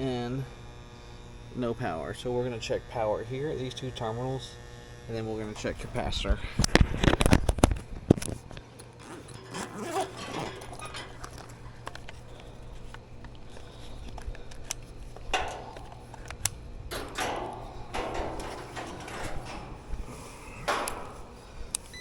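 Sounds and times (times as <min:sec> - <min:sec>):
low electrical hum: 0:00.0 - 0:22.0
tools clicking and knocking: 0:09.3 - 0:21.8.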